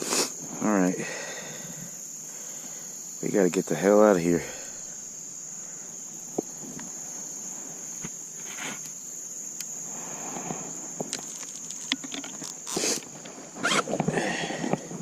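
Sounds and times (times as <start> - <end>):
insects trilling: 0.0 - 15.0
clicks and rustling: 11.0 - 14.1.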